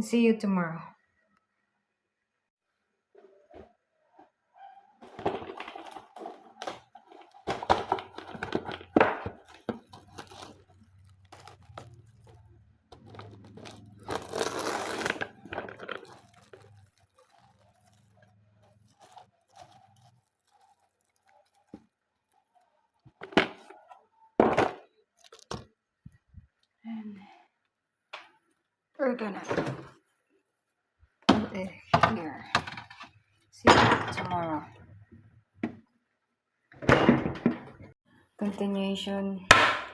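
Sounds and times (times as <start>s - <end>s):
rustling and crinkling: 3.1s - 26.8s.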